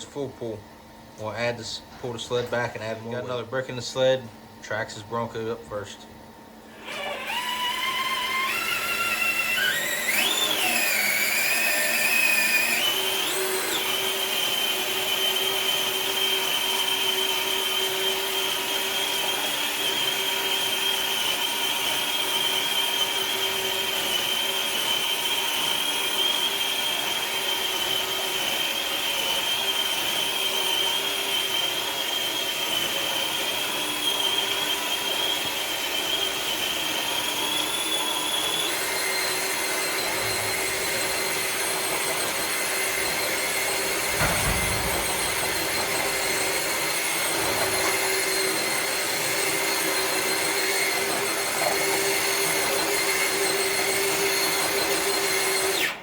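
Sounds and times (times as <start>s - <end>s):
electric motor whining: 6.7s - 19.6s, 37.0s - 52.2s.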